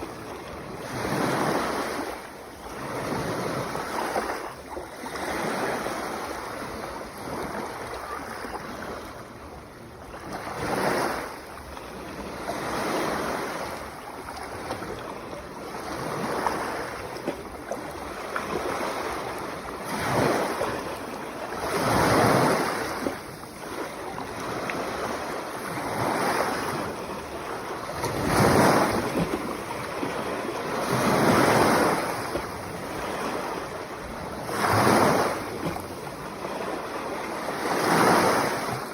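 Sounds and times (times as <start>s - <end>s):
sea waves breaking: 0.0s - 38.9s.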